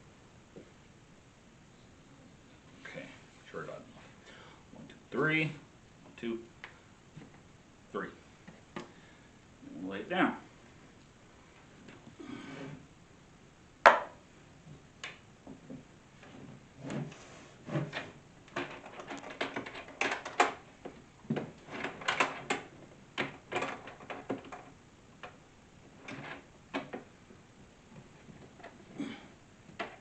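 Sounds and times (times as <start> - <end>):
wooden parts knocking and clattering: 17.7 - 25.4, 29.7 - 30.0.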